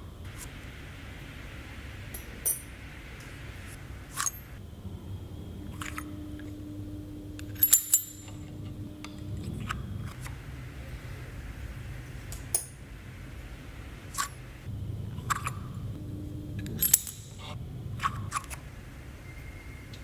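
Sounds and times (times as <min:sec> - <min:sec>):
faint steady hum: 0:00.0 - 0:20.0
metal parts clicking and clinking: 0:02.1 - 0:02.7, 0:04.1 - 0:04.6, 0:05.5 - 0:10.3, 0:15.1 - 0:18.6.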